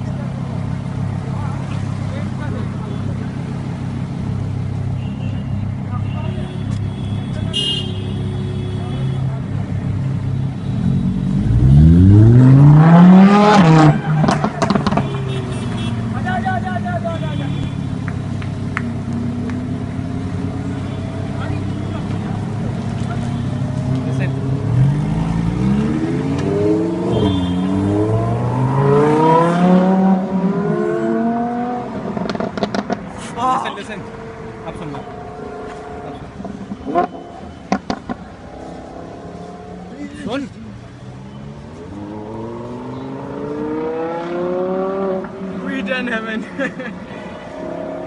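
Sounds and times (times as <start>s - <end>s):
car engine accelerating hard: 10.8s - 15.0s, 23.7s - 33.1s, 41.9s - 45.6s
exhaust crackles and pops: 37.7s - 38.3s.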